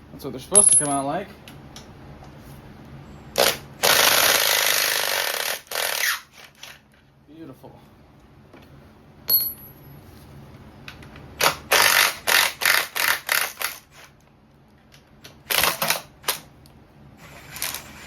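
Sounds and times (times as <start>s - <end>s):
metal tools clinking: 0.5s - 1.1s, 9.3s - 9.8s.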